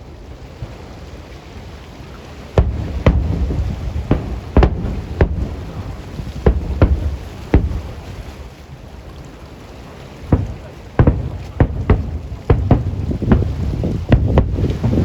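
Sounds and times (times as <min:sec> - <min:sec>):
low background rumble: 0:02.5 - 0:09.2, 0:10.2 - 0:15.0
fireworks booming: 0:02.6 - 0:08.4, 0:10.3 - 0:15.0.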